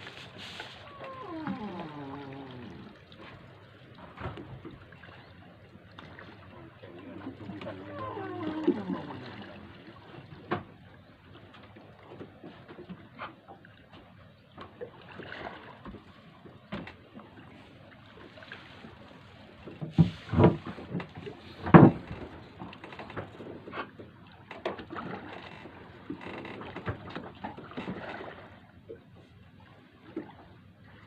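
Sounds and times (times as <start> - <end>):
knocks and bumps on a boat: 1.0 - 5.2, 10.1 - 10.8, 11.4 - 17.4, 18.8 - 29.0.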